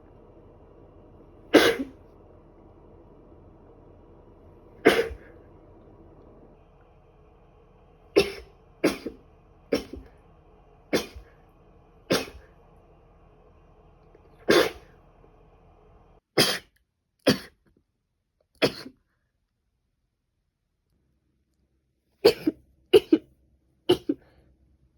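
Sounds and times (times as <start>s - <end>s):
woman coughing: 1.5s - 2.0s, 4.8s - 5.3s, 8.1s - 10.2s, 10.9s - 11.4s, 12.1s - 12.5s, 14.5s - 14.9s, 18.6s - 19.0s, 22.2s - 23.3s, 23.9s - 24.2s.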